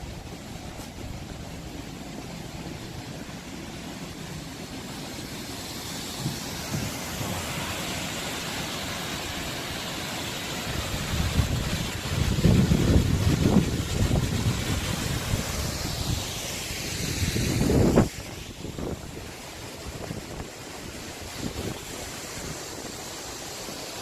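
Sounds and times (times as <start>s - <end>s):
rushing hiss: 0.0s - 24.0s
wind rumbling on microphone: 10.7s - 23.0s.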